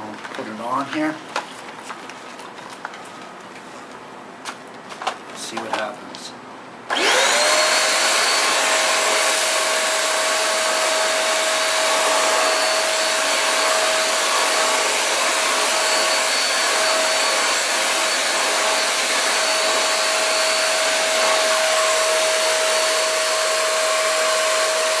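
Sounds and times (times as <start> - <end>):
vacuum cleaner running: 6.9 - 25.0.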